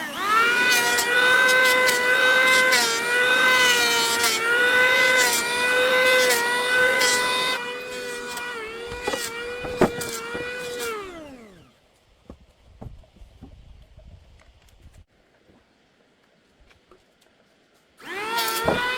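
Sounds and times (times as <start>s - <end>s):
electric power tool motor running: 0.0s - 11.7s.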